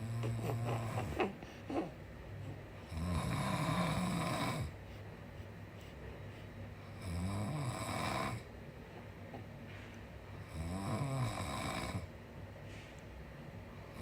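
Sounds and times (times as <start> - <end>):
man snoring: 0.0 - 1.0, 2.9 - 4.8, 6.9 - 8.5, 10.4 - 12.1
quiet breathing: 0.0 - 14.0.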